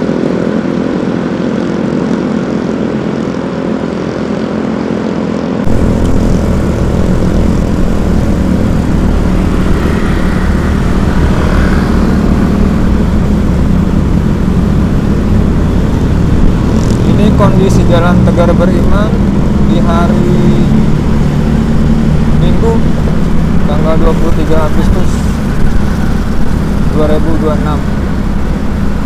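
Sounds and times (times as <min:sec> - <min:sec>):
road and wind noise: 0:00.0 - 0:29.0
vehicle engine running: 0:00.0 - 0:29.0.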